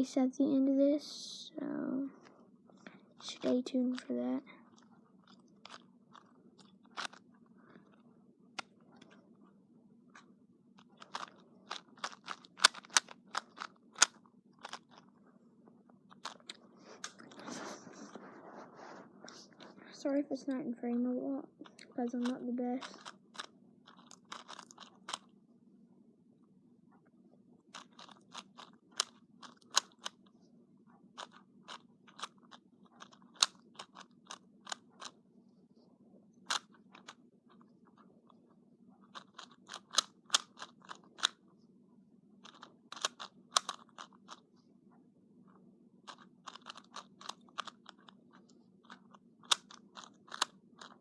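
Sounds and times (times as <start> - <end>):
faint steady hum: 0.0 - 51.0
plastic puzzle cube turning clicks: 4.7 - 7.2, 10.1 - 15.1, 16.1 - 17.5, 21.7 - 25.3, 27.7 - 30.3, 31.2 - 35.2, 36.5 - 38.1, 39.1 - 41.4, 42.4 - 44.4, 46.0 - 51.0.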